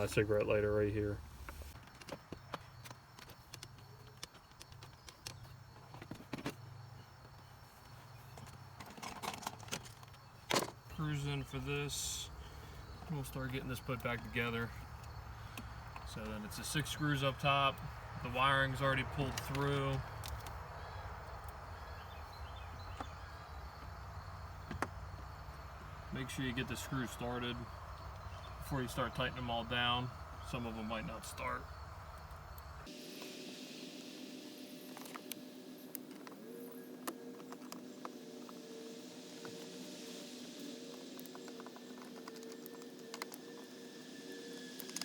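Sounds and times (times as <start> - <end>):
steady low hum: 10.2 - 45.0.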